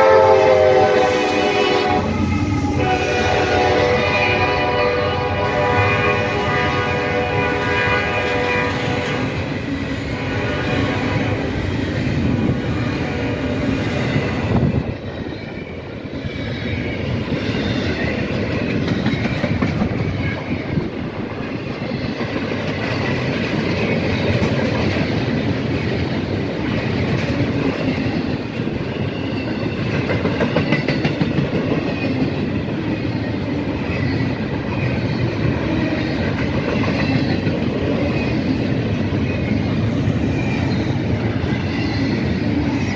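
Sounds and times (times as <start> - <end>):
train horn blast: 0.0 - 11.5
train wheels clacking on rails: 5.4 - 42.9.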